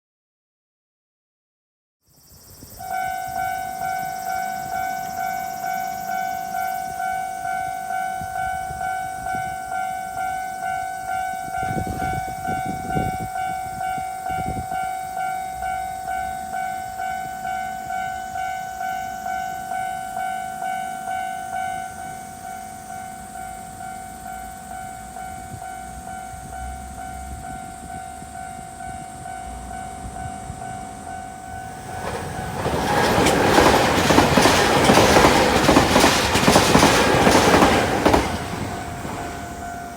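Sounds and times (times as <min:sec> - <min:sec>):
train wheel and rail noise: 0:02.5 - 0:39.9
level crossing warning bell: 0:02.8 - 0:39.9.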